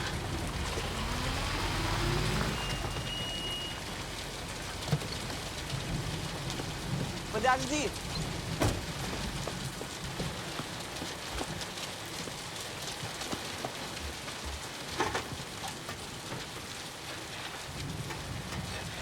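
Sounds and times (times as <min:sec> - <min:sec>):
steady rain hiss: 0:00.0 - 0:19.0
rain drop taps: 0:00.1 - 0:19.0.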